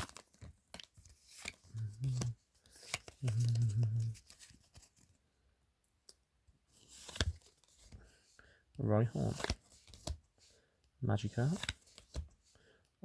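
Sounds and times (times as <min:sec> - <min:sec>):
person humming: 0:01.8 - 0:02.4, 0:03.2 - 0:04.2.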